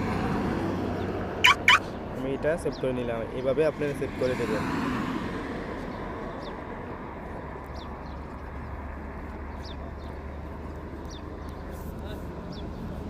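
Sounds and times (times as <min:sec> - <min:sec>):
faint high chirps: 0:01.4 - 0:01.8.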